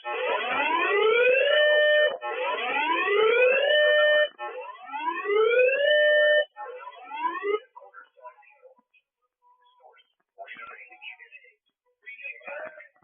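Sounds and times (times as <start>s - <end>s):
electronic alarm whooping: 0.0s - 7.6s.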